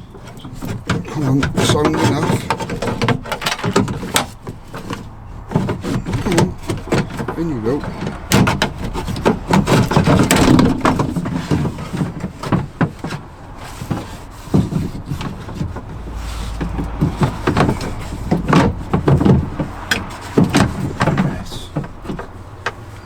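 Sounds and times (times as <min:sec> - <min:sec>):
door handle parts clicking and rattling: 0:00.0 - 0:13.2.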